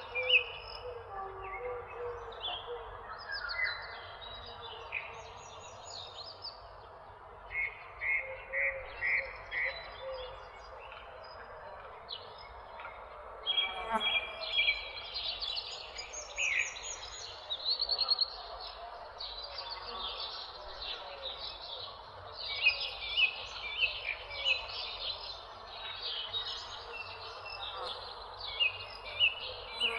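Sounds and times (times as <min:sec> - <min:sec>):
songbirds chirping and singing: 0:07.6 - 0:29.9.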